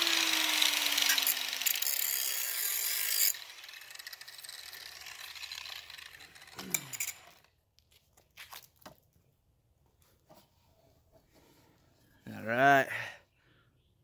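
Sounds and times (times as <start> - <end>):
power tool whine running down: 0.0 - 7.4.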